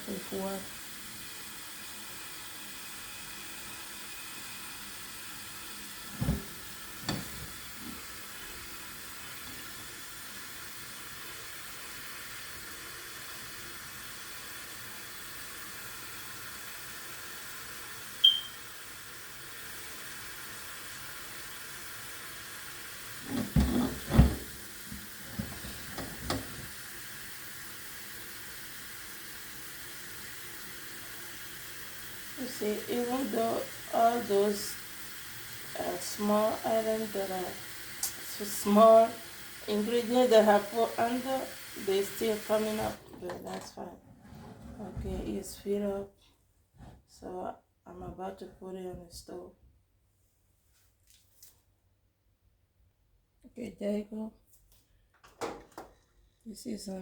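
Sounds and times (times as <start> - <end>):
tap water filling pot: 0.2 - 35.8, 36.4 - 43.7.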